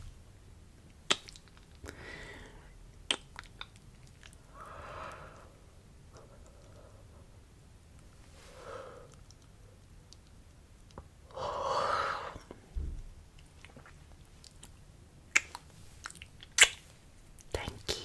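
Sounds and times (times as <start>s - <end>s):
wet mouth clicks: 1.1s - 1.8s, 3.0s - 4.4s, 13.6s - 18.0s
person breathing: 1.8s - 2.8s, 4.5s - 7.3s, 8.3s - 9.2s, 11.3s - 12.5s
low thump: 12.8s - 13.2s.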